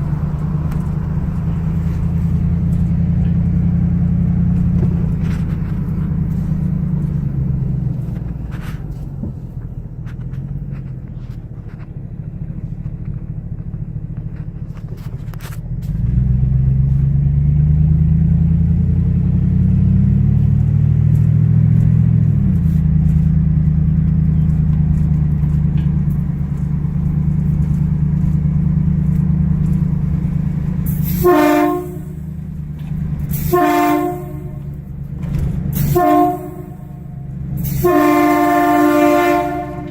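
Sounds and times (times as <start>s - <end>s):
car engine and road noise: 0.0s - 39.9s
train horn blasts: 30.9s - 32.4s, 33.3s - 34.9s, 35.8s - 39.9s.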